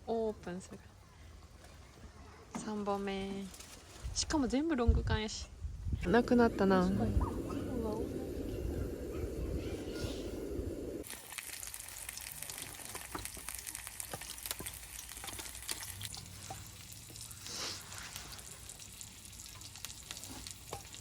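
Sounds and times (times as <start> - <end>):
food sizzling with crackling pops: 5.9 - 21.0.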